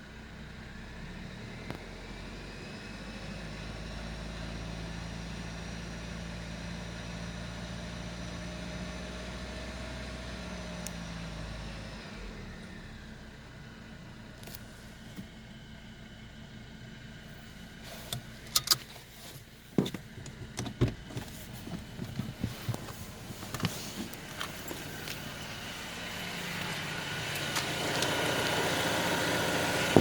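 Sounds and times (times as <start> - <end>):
sharp clicks and knocks: 19.8 - 25.2
engine whine: 19.9 - 30.0.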